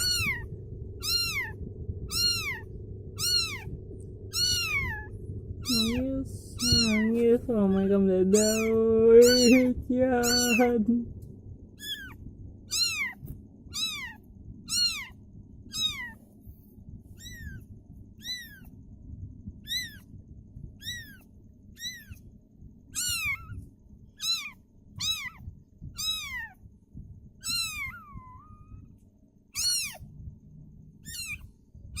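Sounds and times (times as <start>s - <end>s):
kitten meowing: 0.0s - 10.8s, 11.8s - 16.2s, 17.2s - 18.7s, 19.6s - 20.2s, 20.8s - 22.3s, 22.9s - 23.6s, 24.2s - 26.6s, 27.4s - 28.9s, 29.5s - 30.1s, 31.0s - 32.0s.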